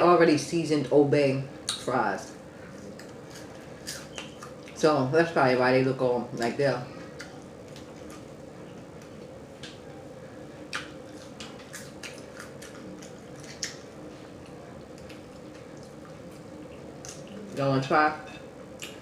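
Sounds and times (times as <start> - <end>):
faint steady hum: 0.0 - 19.0
person chewing with wet smacks: 2.7 - 4.8, 7.1 - 10.0, 10.6 - 17.6, 18.7 - 19.0.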